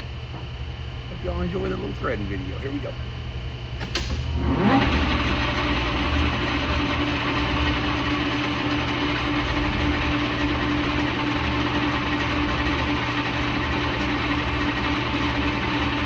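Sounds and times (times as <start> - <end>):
lathe humming: 1.0 - 16.0.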